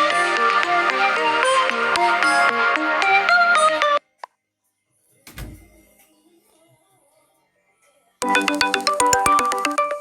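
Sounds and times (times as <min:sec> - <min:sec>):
smartphone ringtone melody: 0:08.2 - 0:10.0.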